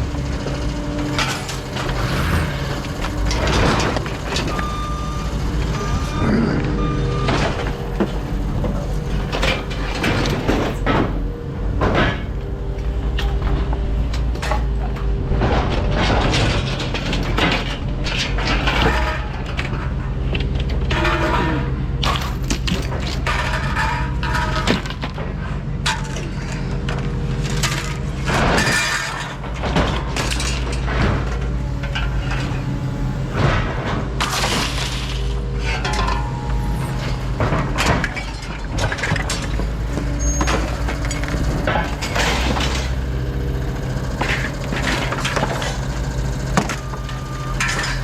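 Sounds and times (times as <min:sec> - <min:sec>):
scrap metal clattering: 0:27.5 - 0:48.0
engine idling: 0:35.0 - 0:48.0.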